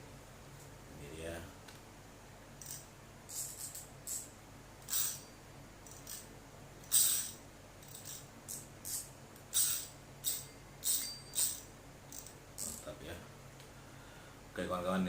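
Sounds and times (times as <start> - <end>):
fishing reel rattling and clicking: 2.6 - 6.2, 6.8 - 12.9.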